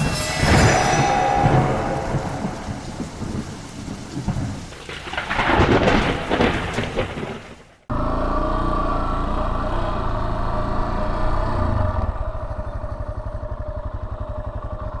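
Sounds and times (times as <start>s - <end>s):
noisy rush: 0.0s - 4.9s
motorcycle engine idling: 12.1s - 15.0s.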